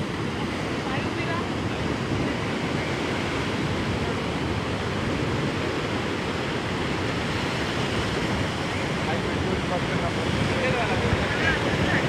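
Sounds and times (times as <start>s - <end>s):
ocean surf breaking on shore: 0.0s - 12.0s.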